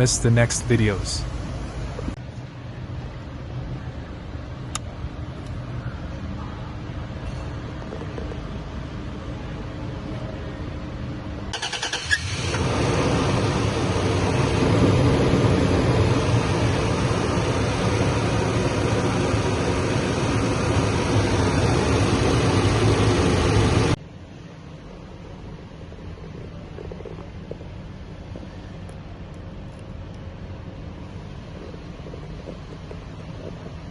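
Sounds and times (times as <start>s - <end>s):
car engine starting and running: 11.5s - 24.0s.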